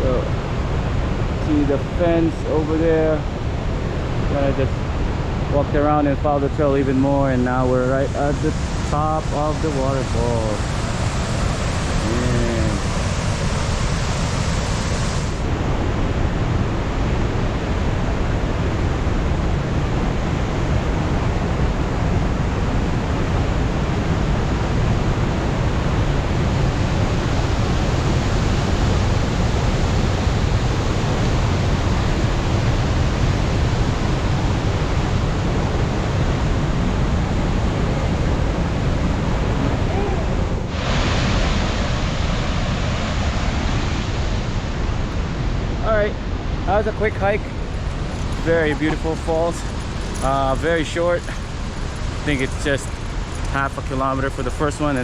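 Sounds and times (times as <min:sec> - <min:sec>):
waterfall rushing: 0:06.9 - 0:16.1, 0:46.9 - 0:55.0.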